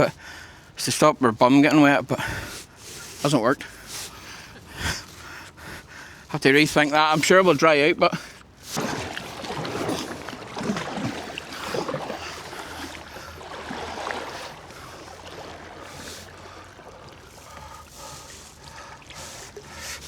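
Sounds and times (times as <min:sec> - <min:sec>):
water splashing against kayak: 0:01.4 - 0:20.0
water trickling and gurgling: 0:08.1 - 0:20.0.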